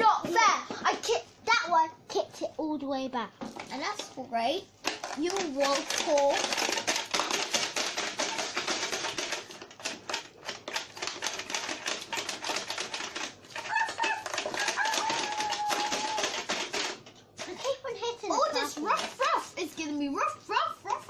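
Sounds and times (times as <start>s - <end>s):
plastic clicks of toy machine: 4.8s - 17.8s.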